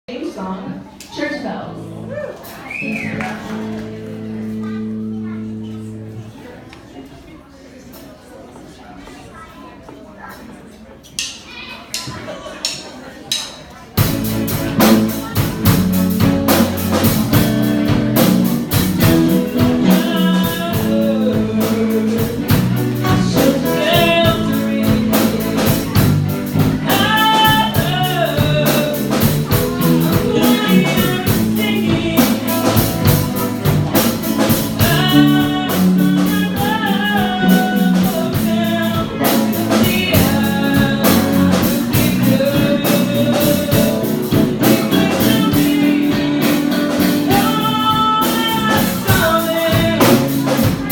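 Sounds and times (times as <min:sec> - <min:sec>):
guitar: 0:00.1 - 0:07.2, 0:13.8 - 0:50.9
drums: 0:01.0 - 0:06.2, 0:11.1 - 0:50.9
person singing: 0:14.7 - 0:50.9.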